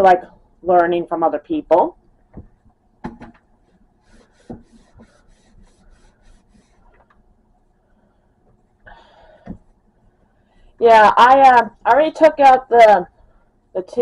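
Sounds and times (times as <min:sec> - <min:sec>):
damp cloth wiping: 0:03.6 - 0:07.1.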